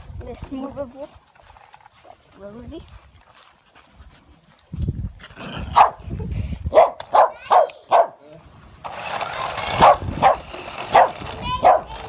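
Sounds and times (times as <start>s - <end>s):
dog barking: 5.7s - 6.0s, 6.7s - 8.2s, 9.8s - 12.0s.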